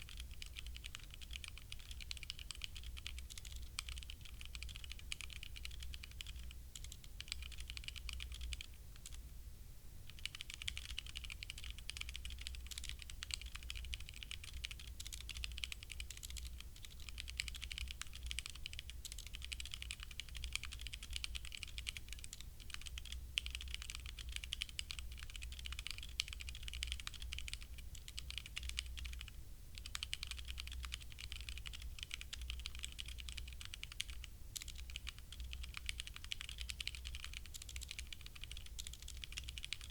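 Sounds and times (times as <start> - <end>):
mechanical keyboard typing: 0.0 - 9.2, 10.1 - 39.9.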